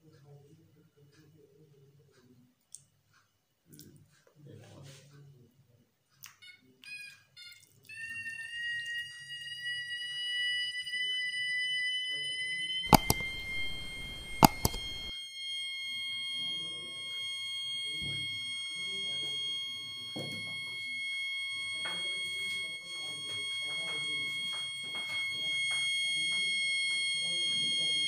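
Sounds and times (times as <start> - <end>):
high-pitched alarm buzzer: 8.5 - 28.0
sharp clicks: 12.9 - 15.1.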